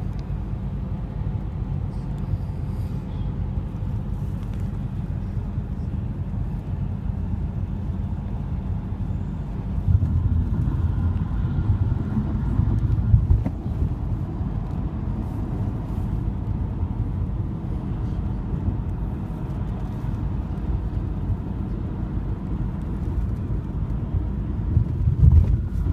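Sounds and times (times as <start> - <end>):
road rumble inside moving car: 0.0 - 25.9.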